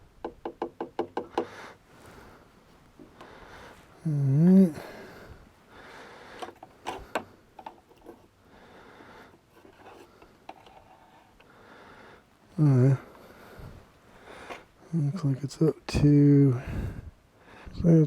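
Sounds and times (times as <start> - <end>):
faint breathing: 1.3 - 7.6, 8.4 - 15.0, 16.5 - 17.8
man humming: 4.0 - 5.3.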